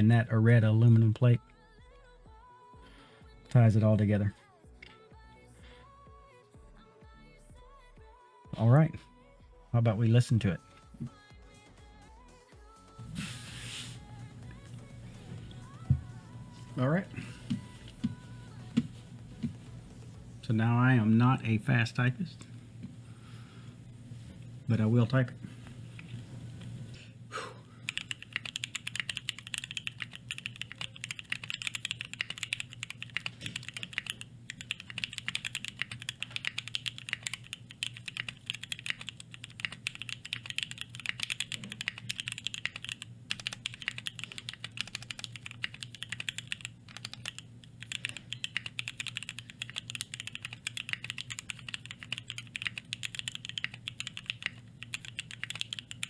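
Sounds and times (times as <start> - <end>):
mechanical keyboard typing: 27.9 - 56.0.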